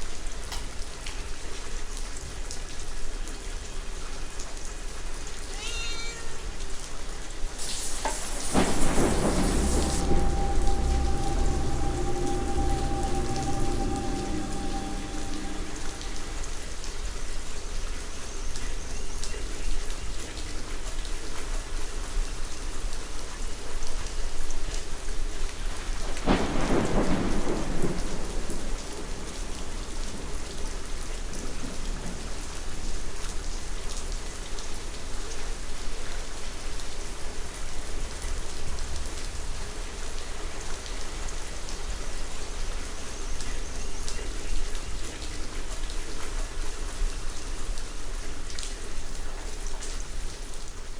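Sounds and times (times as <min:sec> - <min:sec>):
steady rain: 0:00.0 - 0:50.9
thunderclap: 0:07.7 - 0:17.1, 0:26.1 - 0:32.6.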